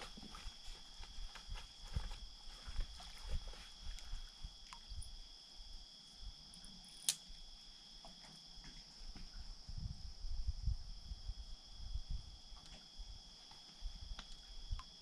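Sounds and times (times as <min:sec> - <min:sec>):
crickets trilling: 0:00.0 - 0:15.0
sharp click: 0:07.0 - 0:07.2.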